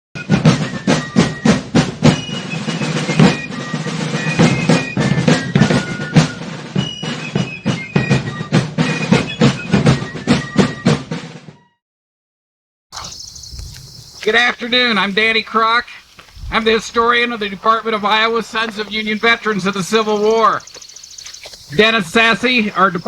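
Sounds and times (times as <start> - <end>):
drums playing: 0.2 - 11.5, 14.3 - 20.7.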